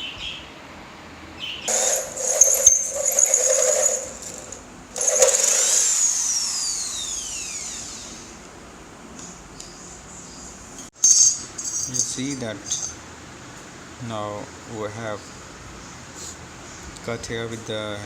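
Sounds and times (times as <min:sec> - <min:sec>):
angle grinder cutting steel: 0:01.7 - 0:08.2
grinder whine spinning down: 0:01.7 - 0:08.2.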